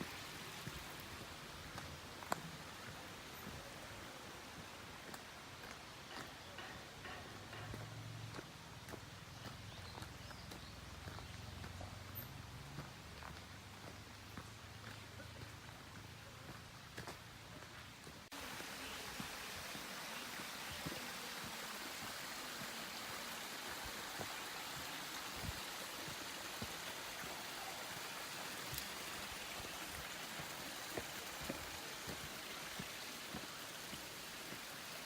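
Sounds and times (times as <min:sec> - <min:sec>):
steady watery hiss: 0:00.0 - 0:05.9, 0:18.3 - 0:35.0
light ticks and drips: 0:00.6 - 0:03.5, 0:26.5 - 0:34.7.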